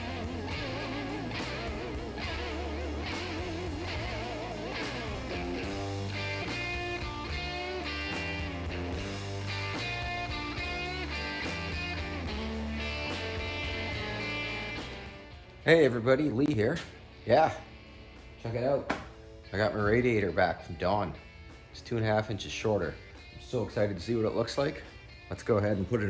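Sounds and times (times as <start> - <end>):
steady bass line: 0.0 - 18.6
electric guitar instrumental: 0.0 - 26.0.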